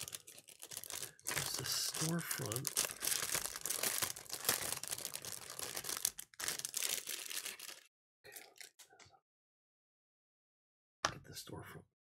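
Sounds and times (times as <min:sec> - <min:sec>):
plastic packaging crinkling and tearing: 0:00.0 - 0:08.7.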